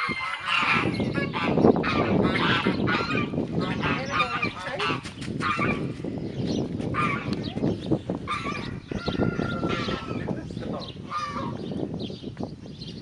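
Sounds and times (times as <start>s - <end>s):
poultry calling: 0.0s - 6.0s, 6.9s - 10.4s, 11.0s - 11.7s.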